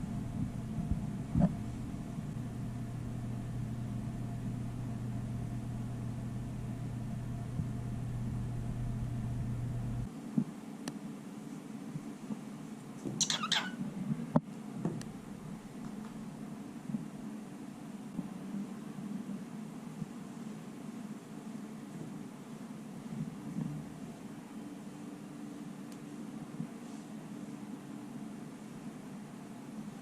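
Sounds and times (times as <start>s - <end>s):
steady low hum: 0.0s - 10.5s, 13.8s - 30.0s
high-pitched animal call: 13.2s - 13.8s.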